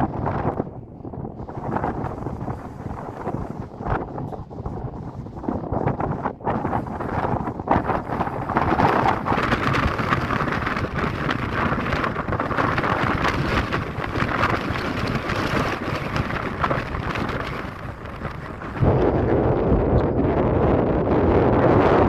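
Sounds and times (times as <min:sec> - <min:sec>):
wind gusting on microphone: 0:00.0 - 0:22.0.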